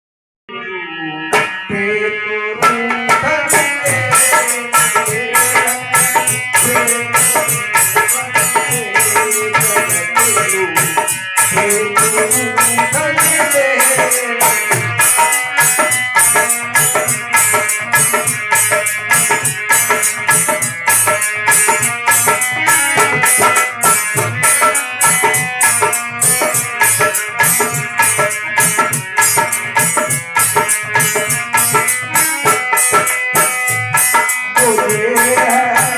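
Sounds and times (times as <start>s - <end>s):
dholak drumming: 1.3s - 35.9s
melodic instrumental music: 2.6s - 35.9s.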